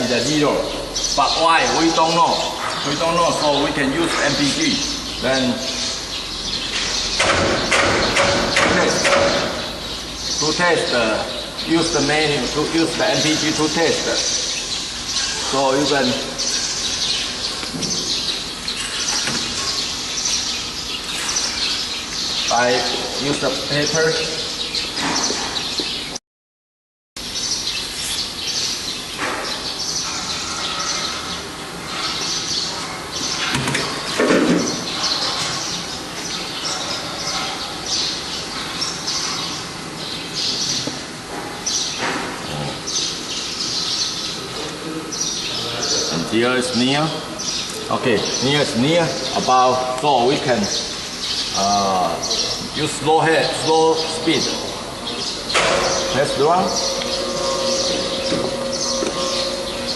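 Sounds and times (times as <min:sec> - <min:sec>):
birds squawking: 0:00.0 - 0:26.2, 0:27.2 - 0:59.9
high-pitched chirping: 0:53.5 - 0:59.9.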